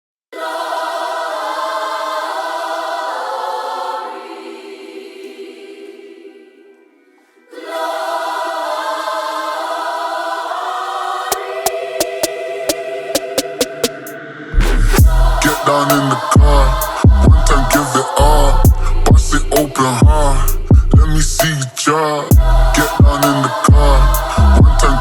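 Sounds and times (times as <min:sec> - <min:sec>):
choir-like chords: 0:00.3 - 0:25.0
sharp regular beat hits: 0:13.2 - 0:17.9, 0:22.3 - 0:24.8.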